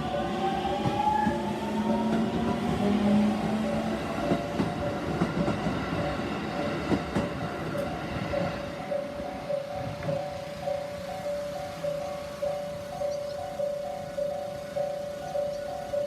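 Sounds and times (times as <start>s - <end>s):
crossing warning bell ringing: 0.0s - 16.0s
train wheels clattering over rail joints: 1.9s - 11.8s.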